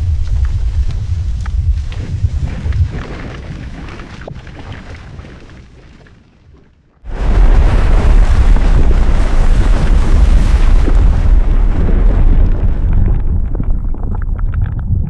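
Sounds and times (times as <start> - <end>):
volcanic eruption blast and rumble: 0.0 - 3.0, 7.1 - 15.0.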